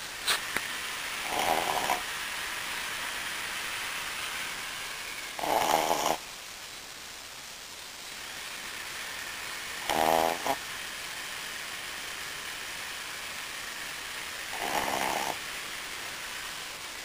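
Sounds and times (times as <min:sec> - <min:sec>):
dog snoring: 0:01.2 - 0:02.1, 0:05.3 - 0:06.2, 0:09.8 - 0:10.7, 0:14.4 - 0:15.5.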